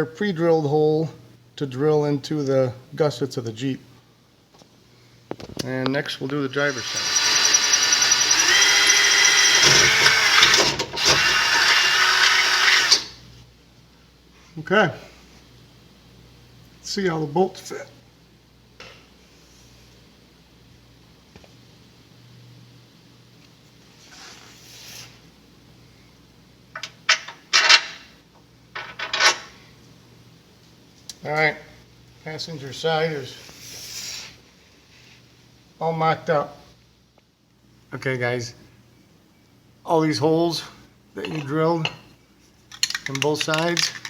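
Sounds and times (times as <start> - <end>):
electric drill whining: 6.6 - 13.2
metal hardware clinking: 42.7 - 44.0.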